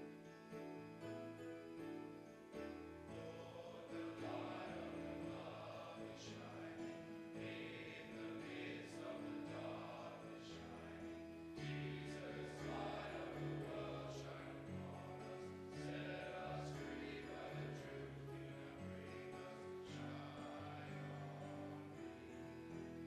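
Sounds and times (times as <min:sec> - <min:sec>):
group singing a hymn: 0:02.7 - 0:23.0.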